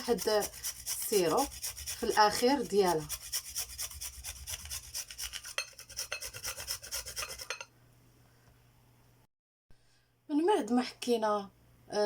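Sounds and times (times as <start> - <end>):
turnip grated on hand grater: 0.0 - 7.7.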